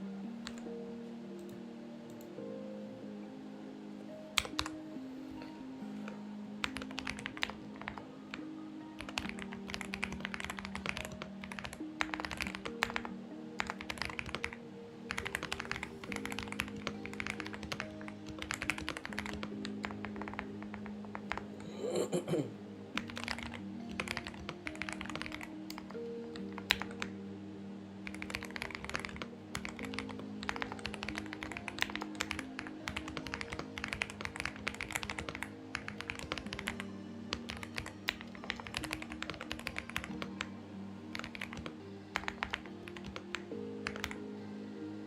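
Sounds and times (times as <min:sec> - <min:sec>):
soft background music: 0:00.0 - 0:45.0
mechanical keyboard typing: 0:00.4 - 0:00.7, 0:04.4 - 0:04.8, 0:06.0 - 0:08.4, 0:09.0 - 0:21.6, 0:23.0 - 0:27.1, 0:28.0 - 0:40.5, 0:41.1 - 0:44.2.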